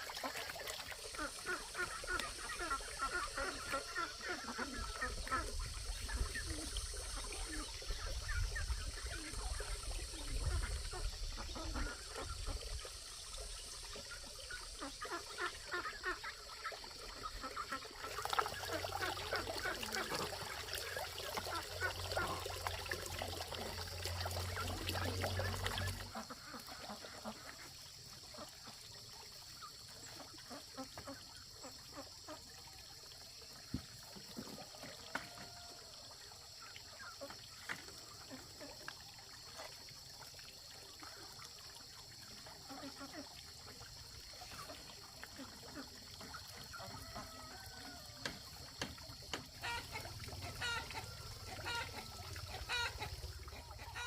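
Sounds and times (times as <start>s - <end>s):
water trickling and splashing: 0.0s - 54.0s
small clicks and drips: 13.3s - 28.5s, 29.2s - 53.9s.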